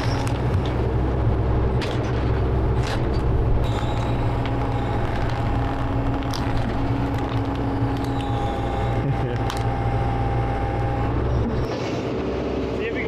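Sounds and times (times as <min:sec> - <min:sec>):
excavator diesel engine running: 0:00.0 - 0:13.0
steady whine: 0:00.0 - 0:13.0.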